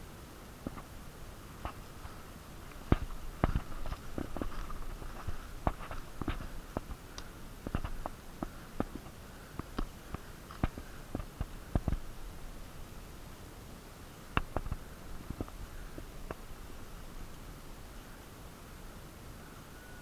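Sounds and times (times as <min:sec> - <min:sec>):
crunching footsteps: 0:01.6 - 0:12.2.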